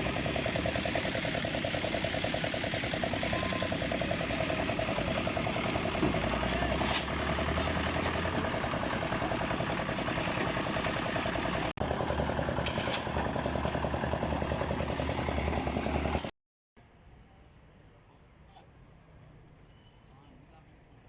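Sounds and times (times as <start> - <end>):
engine running steadily: 0.0 - 16.3.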